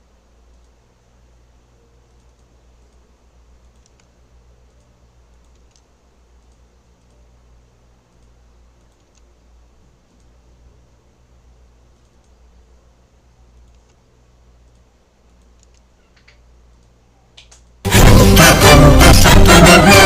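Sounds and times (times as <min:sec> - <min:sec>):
steady low hum: 0:00.0 - 0:20.0
computer keyboard and mouse clicks: 0:00.4 - 0:00.8, 0:02.0 - 0:07.2, 0:08.1 - 0:09.3, 0:11.9 - 0:12.4, 0:13.5 - 0:14.0, 0:14.6 - 0:17.8.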